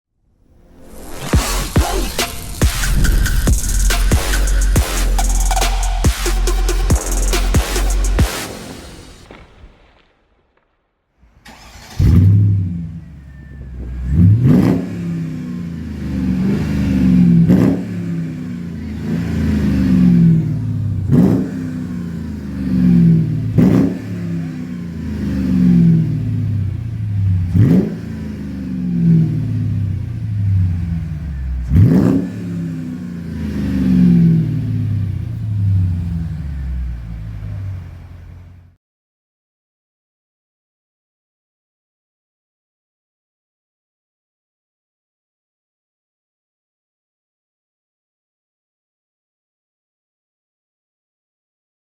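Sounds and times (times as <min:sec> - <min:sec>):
car engine revving: 0:00.5 - 0:09.4, 0:11.4 - 0:38.7.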